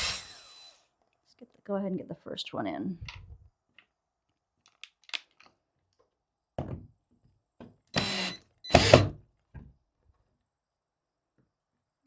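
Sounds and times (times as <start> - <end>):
drill driving screw into wood: 0.0 - 0.8, 8.0 - 9.2.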